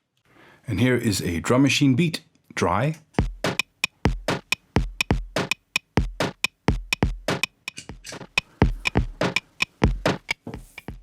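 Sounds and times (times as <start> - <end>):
drum machine beat: 3.2 - 11.0.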